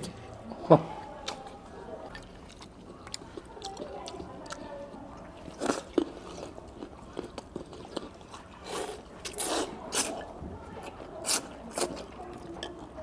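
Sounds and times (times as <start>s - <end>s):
noodles being slurped and chewed: 1.2s - 13.0s.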